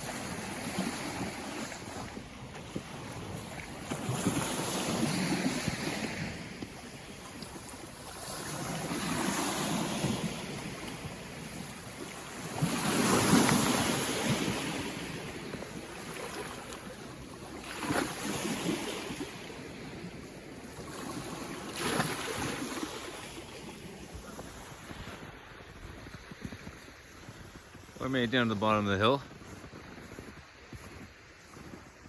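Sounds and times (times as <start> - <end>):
waves breaking on shore: 0.0 - 32.0.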